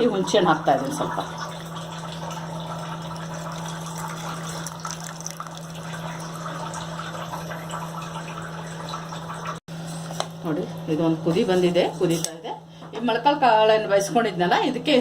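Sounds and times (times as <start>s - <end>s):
broth bubbling in a pot: 0.0s - 11.0s.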